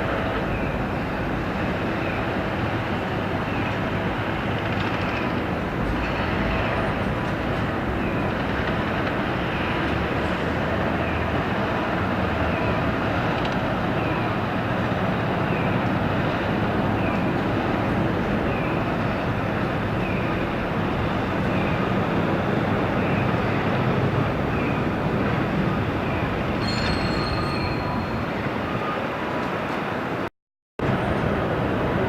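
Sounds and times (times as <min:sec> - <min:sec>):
heavy machinery engines rumbling: 0:00.0 - 0:32.0
faint high squeaks: 0:26.6 - 0:29.0.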